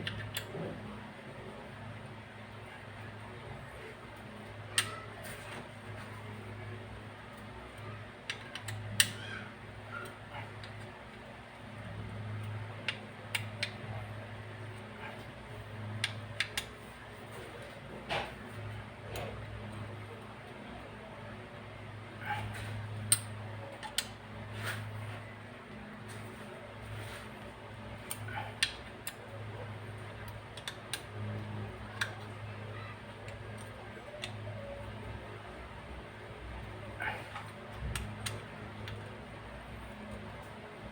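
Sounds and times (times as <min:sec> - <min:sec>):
steady low hum: 0:00.0 - 0:40.9
small tools clicking and tapping: 0:08.2 - 0:09.2, 0:30.2 - 0:31.2.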